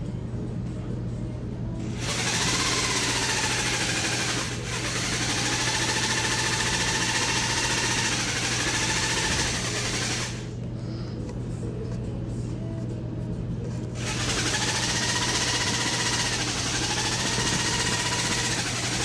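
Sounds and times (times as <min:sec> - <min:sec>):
small motor running: 0:01.8 - 0:10.5, 0:14.0 - 0:19.0.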